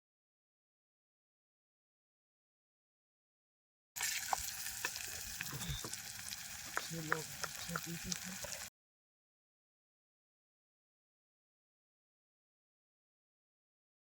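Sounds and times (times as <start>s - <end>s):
campfire cooking sizzle with pops: 4.0s - 8.7s.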